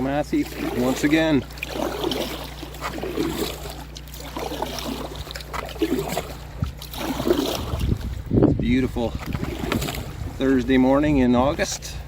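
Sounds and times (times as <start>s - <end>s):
paddle strokes in water: 0.0s - 12.0s.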